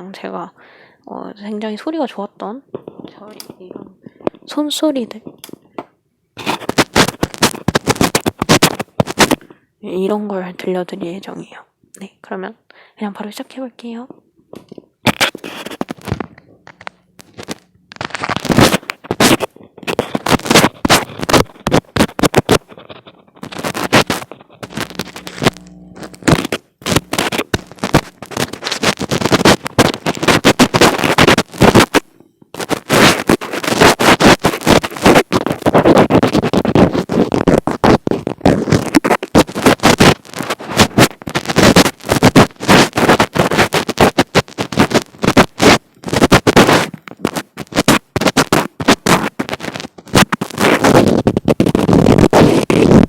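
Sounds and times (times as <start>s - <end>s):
hands scratching on microphone: 6.4s - 9.4s, 15.0s - 53.0s.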